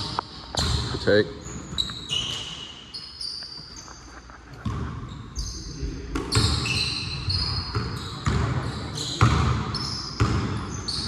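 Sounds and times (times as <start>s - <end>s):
basketball bouncing: 0.0s - 2.5s, 4.5s - 5.1s, 6.1s - 11.0s
sneaker squeaks: 0.0s - 11.0s.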